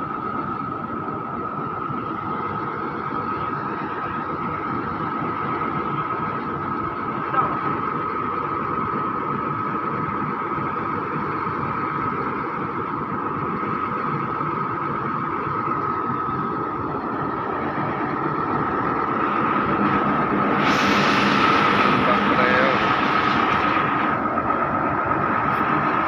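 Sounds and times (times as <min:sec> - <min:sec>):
engine whine: 0:00.0 - 0:26.0
truck engine running: 0:00.0 - 0:26.0
loud hiss: 0:20.2 - 0:24.2.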